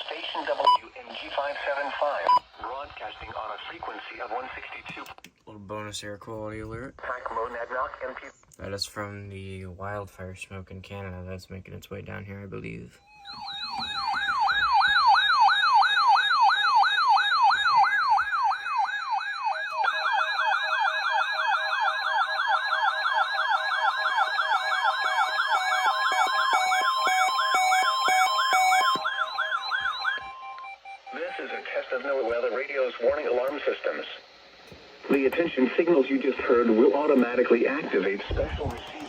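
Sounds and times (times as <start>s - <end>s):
on-off beeps: 2.2s - 2.5s, 13.0s - 20.8s, 25.0s - 32.4s
electronic siren rising and falling: 13.0s - 31.6s.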